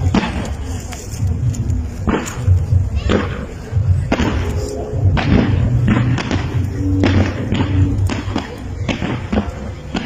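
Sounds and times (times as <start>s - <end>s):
fireworks booming: 0.0s - 10.0s.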